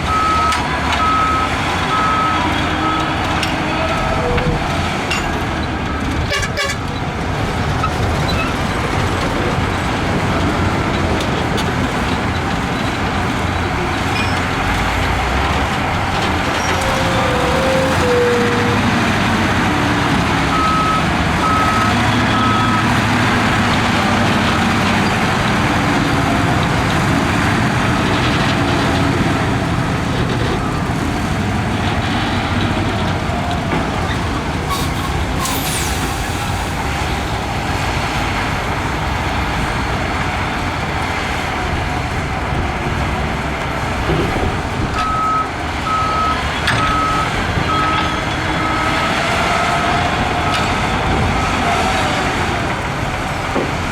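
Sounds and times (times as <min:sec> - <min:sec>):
heavy diesel machinery running: 0:00.0 - 0:53.9
reversing alarm beeping: 0:00.1 - 0:04.4, 0:20.4 - 0:23.0, 0:45.0 - 0:50.7.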